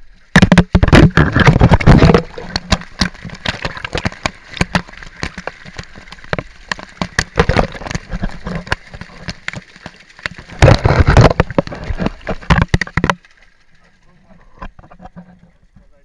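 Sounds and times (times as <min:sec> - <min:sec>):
waterfall splashing on camera: 0:00.0 - 0:13.9.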